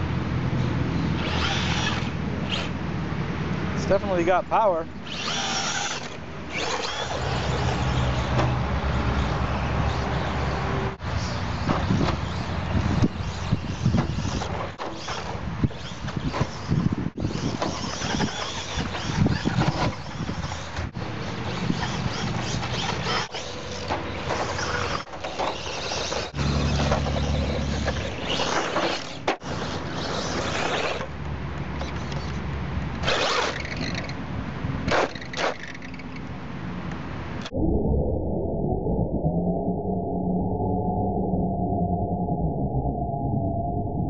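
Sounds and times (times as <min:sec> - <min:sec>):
rc car rattling over dirt: 0:01.2 - 0:02.7, 0:05.0 - 0:10.1, 0:11.3 - 0:31.1, 0:33.0 - 0:34.2, 0:34.8 - 0:36.2.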